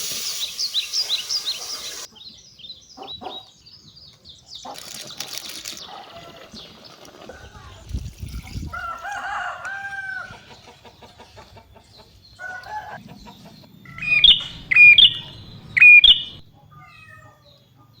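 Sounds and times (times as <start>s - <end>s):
shrill bird calls: 13.8s - 17.6s.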